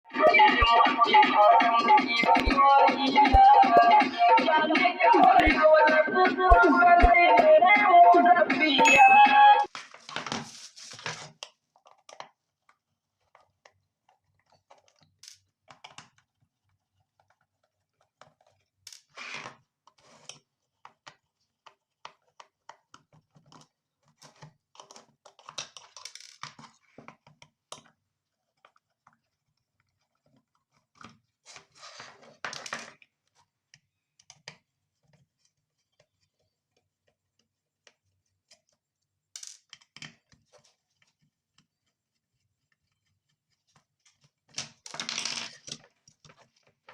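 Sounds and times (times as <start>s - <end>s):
small objects clicking and tapping: 39.4s - 41.8s.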